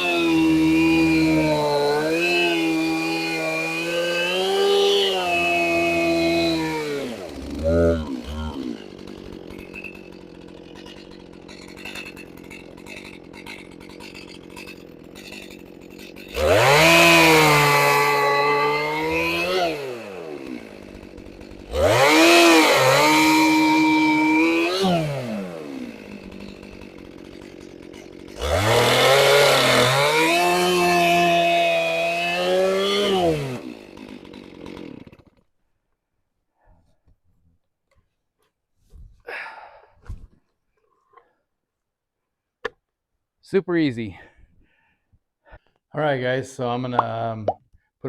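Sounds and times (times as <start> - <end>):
chainsaw cutting log: 0.0 - 35.5
chainsaw idling and revving: 0.0 - 35.6.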